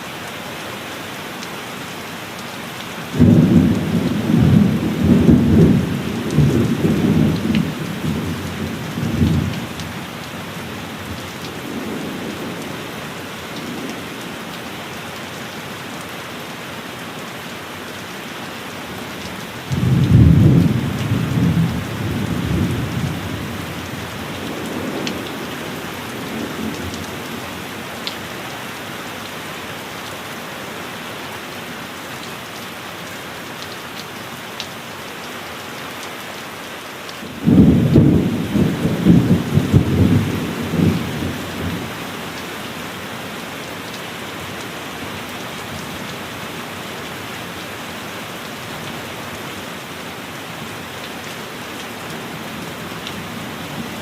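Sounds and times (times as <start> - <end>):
heavy rain: 0.0 - 54.0
rolling thunder: 19.7 - 23.6, 37.3 - 41.9.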